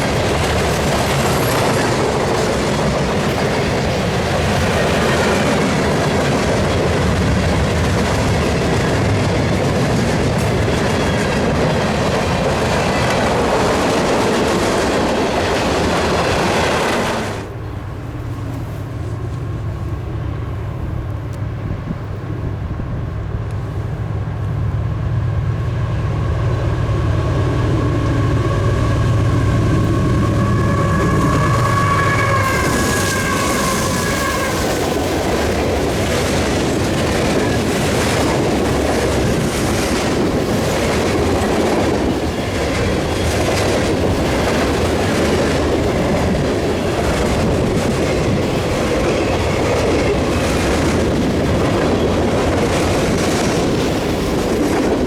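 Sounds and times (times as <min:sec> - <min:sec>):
wheels clacking over rail joints: 0:00.0 - 0:20.0, 0:26.4 - 0:55.0
diesel locomotive rumble: 0:00.0 - 0:55.0
train horn: 0:26.1 - 0:35.6.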